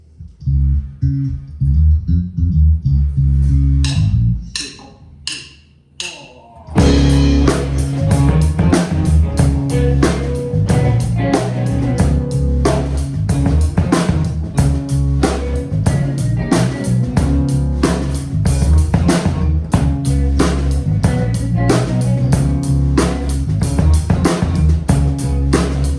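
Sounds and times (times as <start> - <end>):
band playing guitar bass drums: 6.7 - 25.9.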